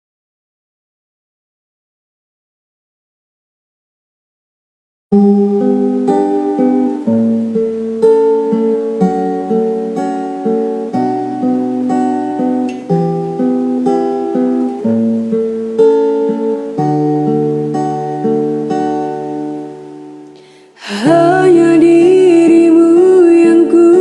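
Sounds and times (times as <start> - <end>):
acoustic guitar chords: 5.1 - 24.0.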